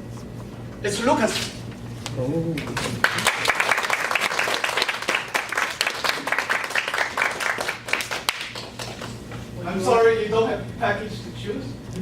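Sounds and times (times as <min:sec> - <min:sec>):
audience applauding: 0:02.6 - 0:09.2.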